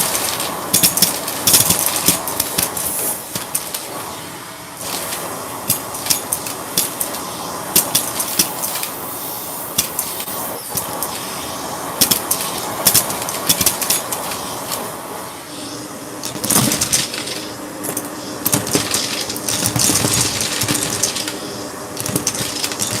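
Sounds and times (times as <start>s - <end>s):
vacuum cleaner running: 0.0s - 23.0s
sharp clicks and crackles: 16.2s - 21.4s, 22.0s - 23.0s.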